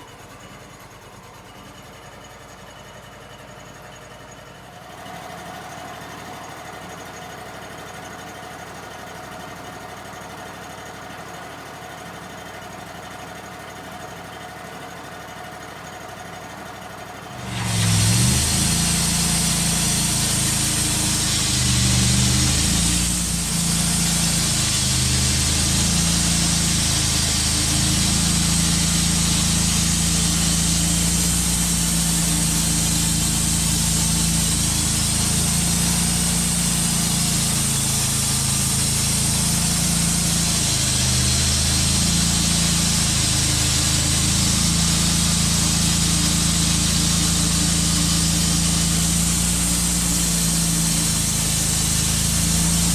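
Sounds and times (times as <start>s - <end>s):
sawmill engine running: 0.0s - 52.9s
band saw blade whine: 17.3s - 52.9s.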